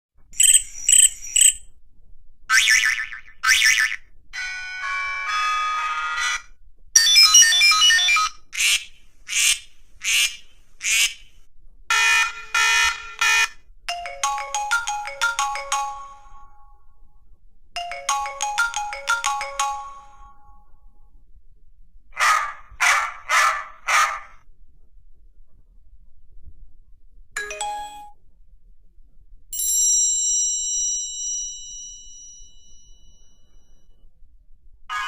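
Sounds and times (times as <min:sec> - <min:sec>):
beeping ringtone melody: 0:07.0 - 0:08.4, 0:11.9 - 0:16.6, 0:17.8 - 0:20.4, 0:27.4 - 0:28.2
cell phone alert sounds: 0:27.4 - 0:28.1.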